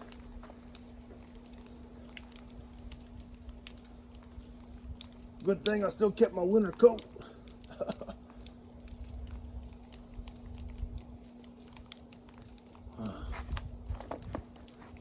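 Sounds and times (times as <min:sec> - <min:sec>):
low rumble on microphone: 0:12.8 - 0:15.0.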